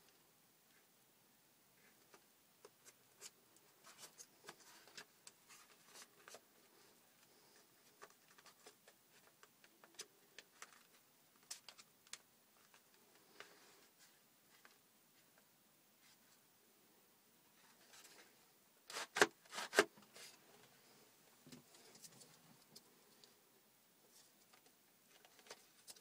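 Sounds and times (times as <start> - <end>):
light clicks and scrapes of cardboard: 24.1 - 26.0.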